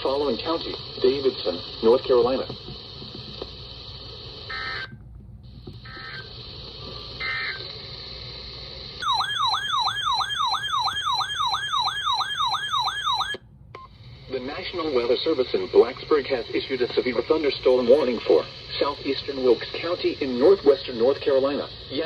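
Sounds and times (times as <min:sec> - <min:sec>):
broadcast hiss: 0:00.0 - 0:22.0
data tone bursts: 0:09.0 - 0:13.4
warbling electronic alert tone: 0:09.0 - 0:13.4.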